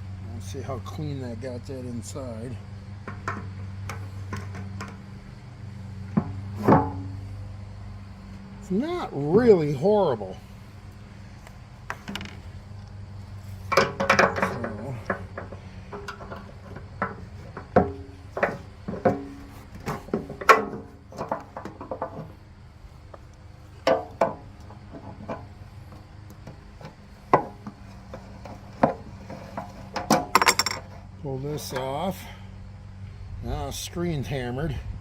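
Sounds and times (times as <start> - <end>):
wrench clinking on metal: 30.3 - 30.9.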